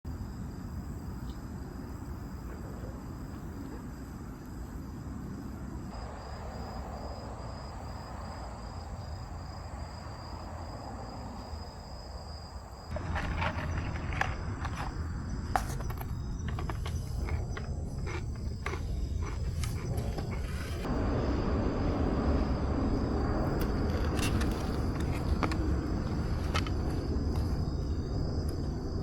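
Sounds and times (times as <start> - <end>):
crickets trilling: 0.1 - 29.0
low outdoor rumble: 12.8 - 29.0
campfire crackling: 12.9 - 29.0.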